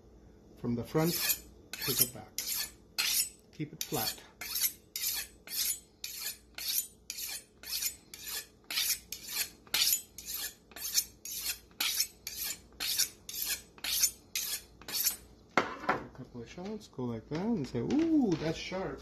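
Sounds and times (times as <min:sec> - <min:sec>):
knife scraping on sharpener: 0:01.1 - 0:15.2.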